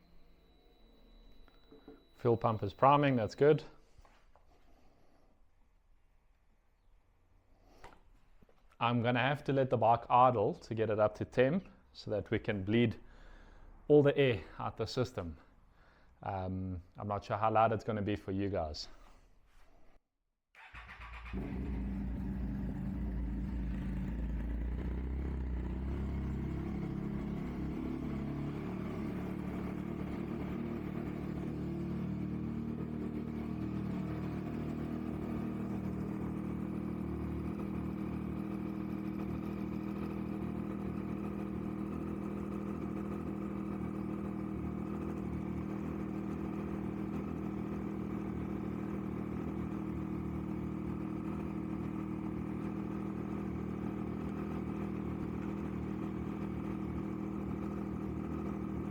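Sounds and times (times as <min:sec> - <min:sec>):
motorcycle engine idling: 0:01.4 - 0:03.5, 0:20.6 - 0:58.9.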